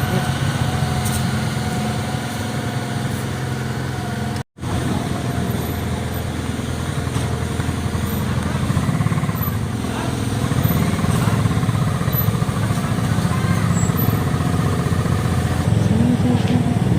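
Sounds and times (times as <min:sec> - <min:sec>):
engine running steadily: 0:00.0 - 0:16.9.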